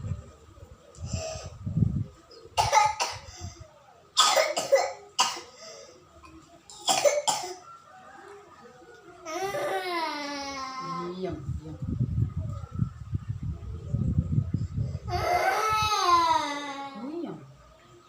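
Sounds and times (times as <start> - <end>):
child coughing: 2.6 - 3.3, 4.2 - 5.6, 6.7 - 7.6.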